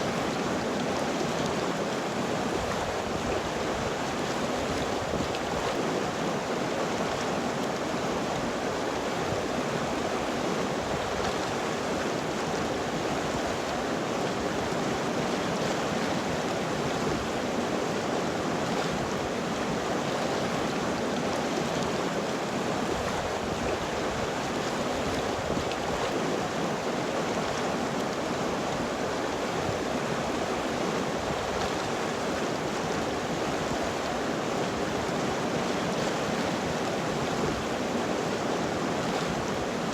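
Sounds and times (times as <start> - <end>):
river water rushing: 0.0 - 39.9.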